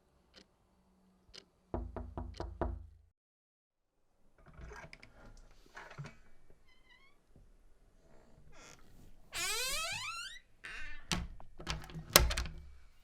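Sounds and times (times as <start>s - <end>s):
hollow knocks: 1.8s - 2.9s.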